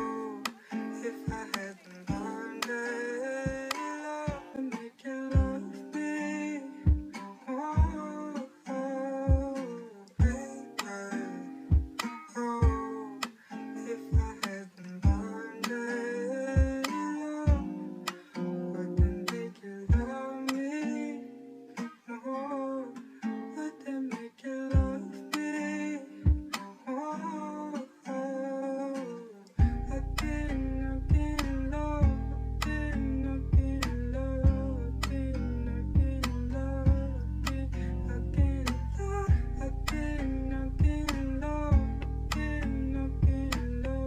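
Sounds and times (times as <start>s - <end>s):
guitar-led music: 0.0s - 44.0s
deep low beats: 29.6s - 32.8s, 33.4s - 35.1s, 35.9s - 43.9s
low drum thump: 39.3s - 39.5s, 40.8s - 41.1s.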